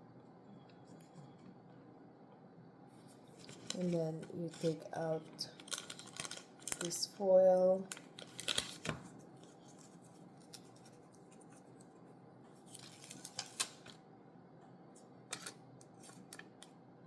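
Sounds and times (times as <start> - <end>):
foil lid crinkling: 3.4 - 4.8, 5.4 - 7.2, 7.9 - 11.2, 12.6 - 14.0.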